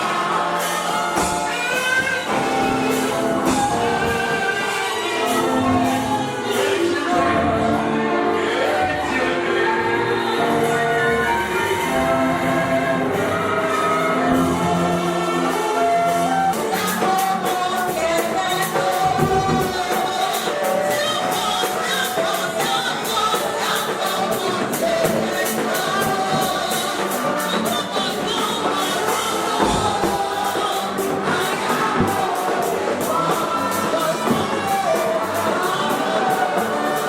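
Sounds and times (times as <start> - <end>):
music with singing: 0.0 - 37.0
steady percussion beat: 14.2 - 37.0.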